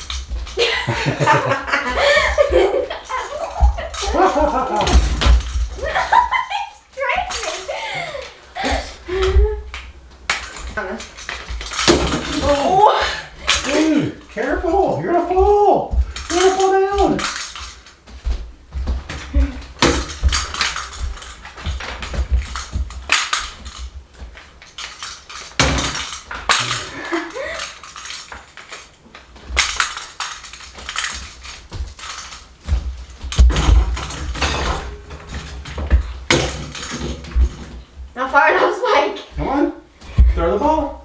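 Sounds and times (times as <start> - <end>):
hard plastic knocks and clatters: 8.5 - 38.2.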